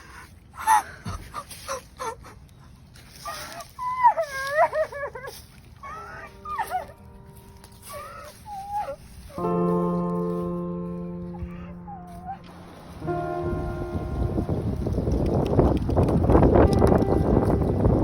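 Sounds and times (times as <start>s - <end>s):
woman sobbing and wailing: 0.0s - 9.6s, 11.1s - 12.5s
held music tones: 5.8s - 18.0s.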